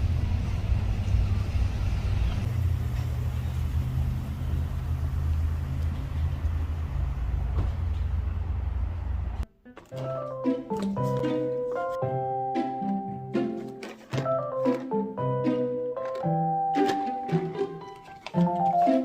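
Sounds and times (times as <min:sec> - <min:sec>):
vehicle engine and road rumble: 0:00.0 - 0:09.5.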